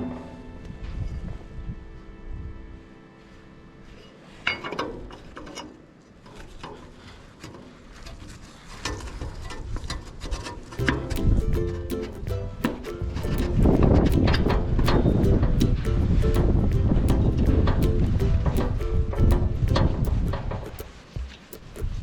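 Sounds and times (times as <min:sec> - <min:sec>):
music: 0:00.0 - 0:04.5, 0:10.8 - 0:22.0
mechanical clicks and knocks: 0:10.8 - 0:22.0.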